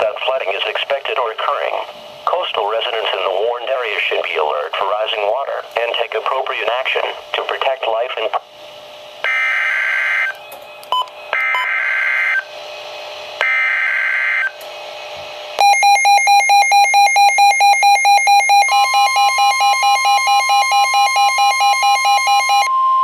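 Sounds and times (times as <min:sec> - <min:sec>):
radio hiss: 0:00.0 - 0:08.8
alert radio alarm beeping: 0:09.2 - 0:12.4, 0:13.4 - 0:14.6, 0:15.6 - 0:23.0
higher alarm tone: 0:09.2 - 0:12.5, 0:13.4 - 0:14.6, 0:15.6 - 0:23.0.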